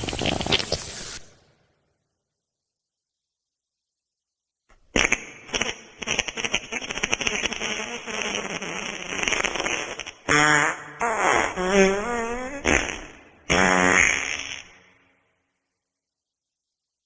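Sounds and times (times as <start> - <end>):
wet fart sounds: 0.0 - 1.4, 4.9 - 15.0.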